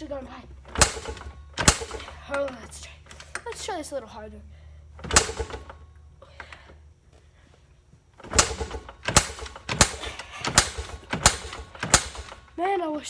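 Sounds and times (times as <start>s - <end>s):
kick starter clattering: 0.6s - 3.7s, 5.0s - 5.8s, 8.2s - 12.6s.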